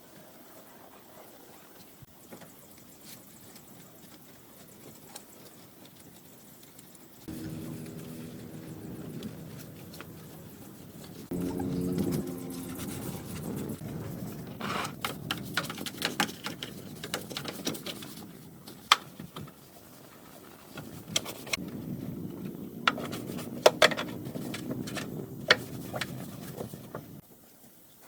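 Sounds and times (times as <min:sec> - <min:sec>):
low steady rumble: 0:07.3 - 0:17.0, 0:21.6 - 0:27.2.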